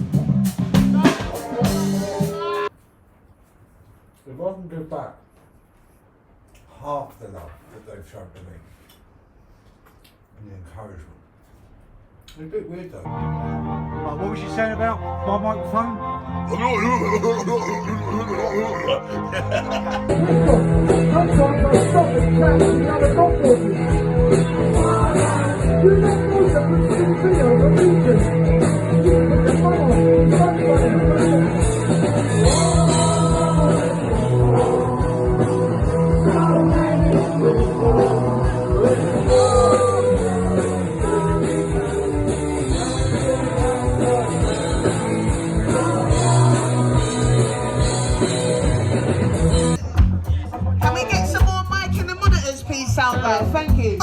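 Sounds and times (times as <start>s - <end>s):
guitar-led rock music: 0.0s - 2.7s, 16.2s - 54.0s.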